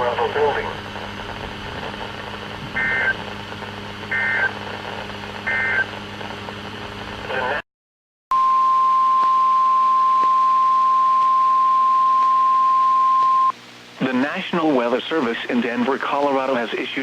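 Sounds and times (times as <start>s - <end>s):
radio hiss and hum: 0.0s - 7.6s, 10.2s - 17.0s
steady single-pitch alert tone: 2.8s - 3.2s
two-tone digital bursts: 2.8s - 3.2s, 4.1s - 4.5s, 5.5s - 5.9s.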